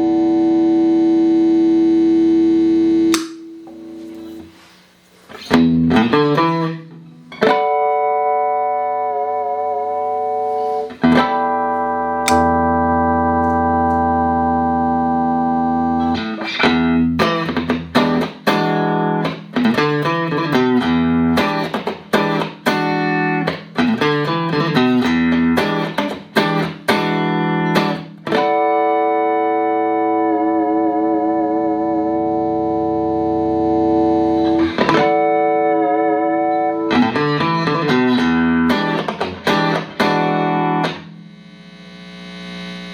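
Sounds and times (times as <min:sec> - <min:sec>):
clean electric guitar playing: 0:00.0 - 0:04.6, 0:05.3 - 0:42.6.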